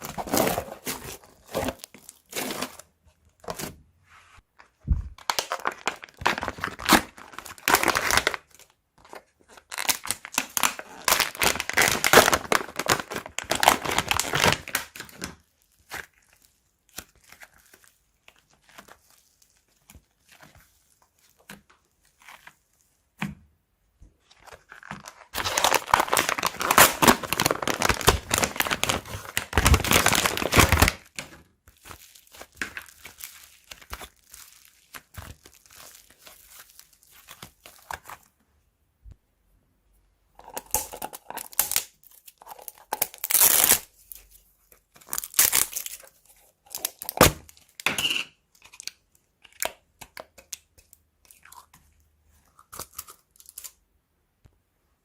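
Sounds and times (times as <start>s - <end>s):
crunchy slime crackling: 5.2s - 22.9s, 24.3s - 38.3s.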